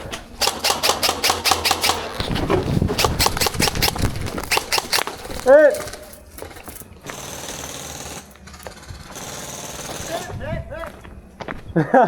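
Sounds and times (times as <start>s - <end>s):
airsoft guns firing rapidly: 0.4s - 6.2s, 7.0s - 10.5s.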